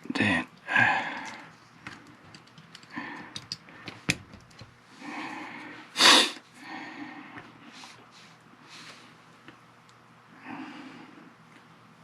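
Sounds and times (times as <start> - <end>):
short burst of breath-like noise: 6.0 - 6.4.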